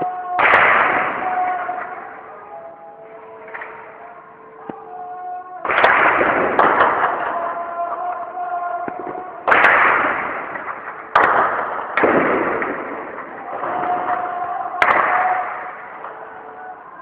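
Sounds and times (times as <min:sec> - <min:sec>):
gunshots echoing: 0:00.0 - 0:02.2, 0:05.6 - 0:08.1, 0:08.8 - 0:16.3.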